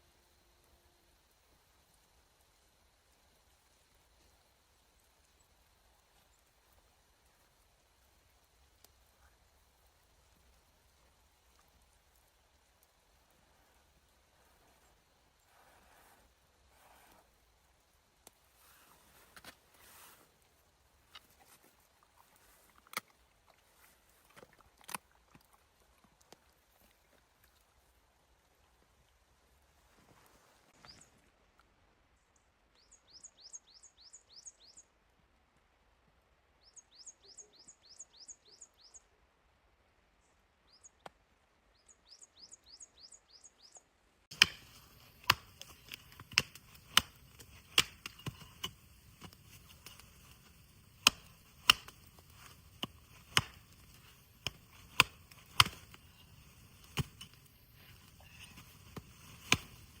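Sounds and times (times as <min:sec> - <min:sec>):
steady hiss: 0:00.0 - 0:22.7, 0:44.3 - 1:00.0
sharp snaps and cracks: 0:18.2 - 0:25.6, 0:44.3 - 1:00.0.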